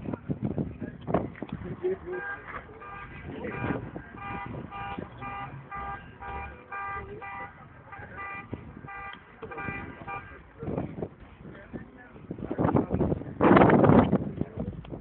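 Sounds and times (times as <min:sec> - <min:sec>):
musical car horn playing a tune: 0:02.1 - 0:10.4.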